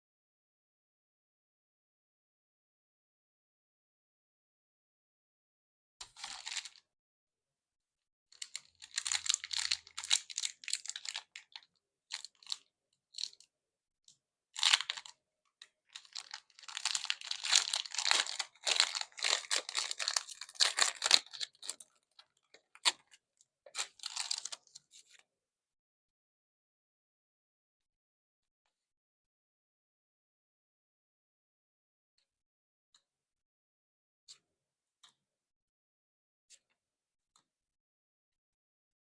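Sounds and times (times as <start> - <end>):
plastic and foil packaging crinkling: 6.2 - 6.8, 8.4 - 12.6, 14.6 - 15.1, 15.9 - 23.1, 23.7 - 24.6
packaging tearing by hand: 16.0 - 21.8, 23.8 - 24.6.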